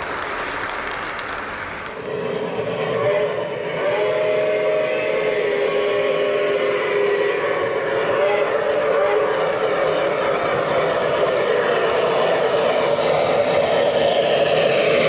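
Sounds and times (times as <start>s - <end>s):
model train wheels rolling: 0.0s - 3.5s, 5.2s - 15.0s
model train steam sound effects: 0.0s - 15.0s
train whistle: 2.0s - 12.9s.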